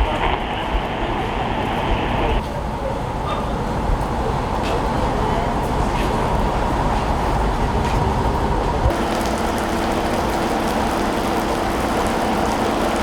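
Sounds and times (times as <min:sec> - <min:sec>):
vehicle engines idling: 0:07.6 - 0:13.0.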